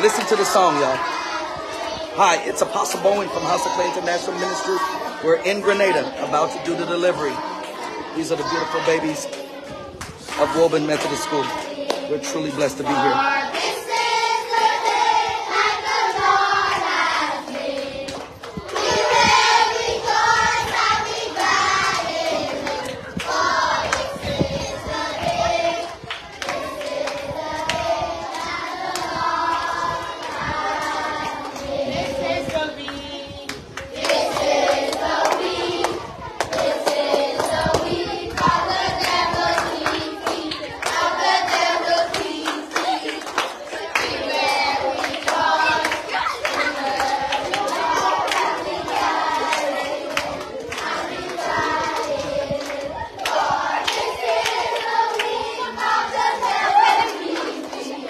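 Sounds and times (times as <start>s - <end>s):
children singing gospel song: 0.0s - 58.0s
hand clapping: 9.2s - 12.1s, 32.8s - 44.3s.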